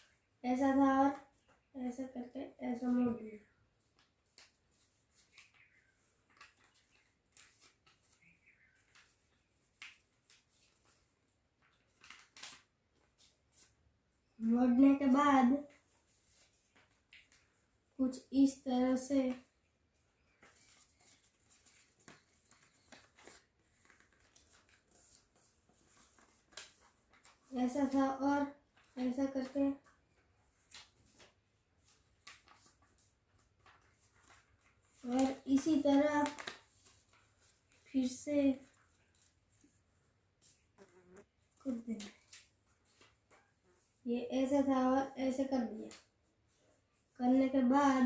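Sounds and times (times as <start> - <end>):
paper rustling and creasing: 3.8 - 13.8, 20.2 - 40.8, 41.6 - 44.0.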